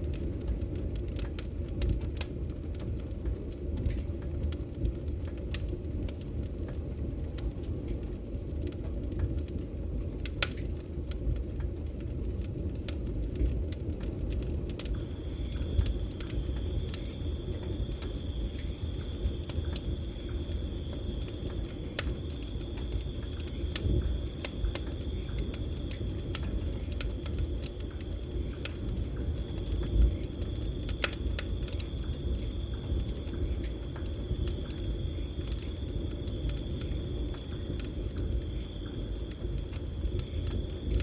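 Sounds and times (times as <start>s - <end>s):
campfire crackling and popping: 0.0s - 41.0s
crickets trilling: 14.9s - 41.0s.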